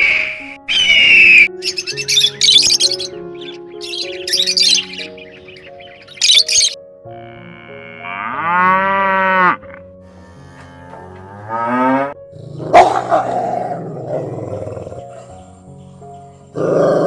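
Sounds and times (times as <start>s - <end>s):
soft background music: 0.0s - 17.0s.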